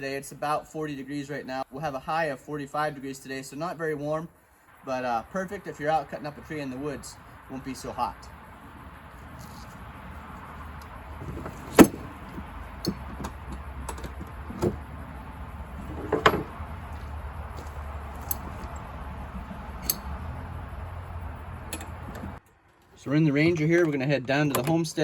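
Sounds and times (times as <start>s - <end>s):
steady low rumble: 4.7s - 22.4s.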